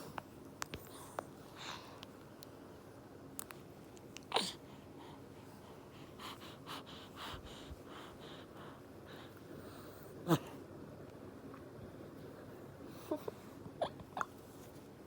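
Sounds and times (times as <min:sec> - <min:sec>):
soft breathy baby sounds: 0:00.0 - 0:02.2, 0:04.2 - 0:10.7, 0:12.2 - 0:14.8.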